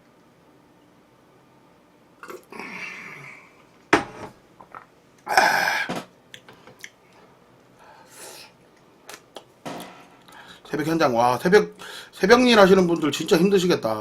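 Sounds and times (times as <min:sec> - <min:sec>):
mouth eating sounds: 0:02.2 - 0:03.5.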